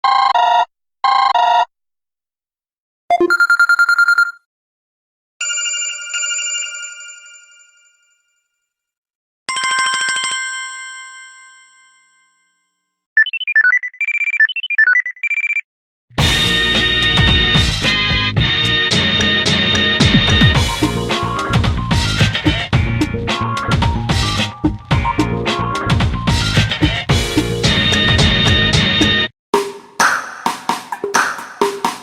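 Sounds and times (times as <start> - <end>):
short phone beeps: 3.1 - 4.5, 13.2 - 15.6.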